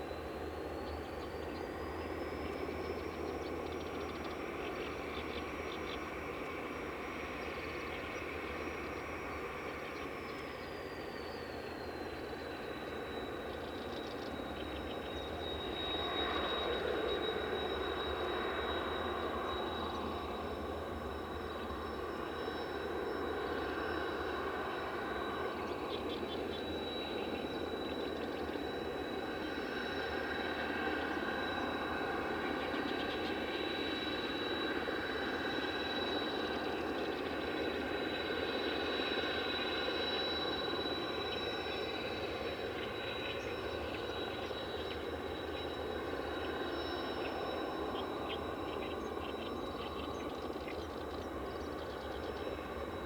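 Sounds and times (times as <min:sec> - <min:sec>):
jet engine turbine whine: 0:00.0 - 0:53.0.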